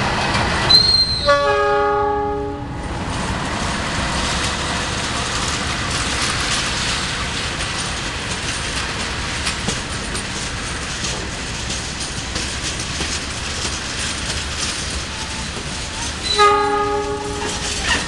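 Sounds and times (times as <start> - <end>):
train wheels rumbling on rails: 0.0 - 18.0
train horn blast: 0.8 - 2.8, 16.2 - 17.8
clacks over rail joints: 3.0 - 18.0.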